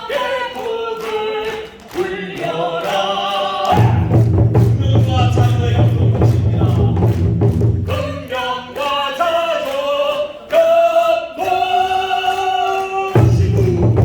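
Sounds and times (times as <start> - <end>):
drums beaten in steady rhythm: 3.7 - 8.4, 13.1 - 14.0.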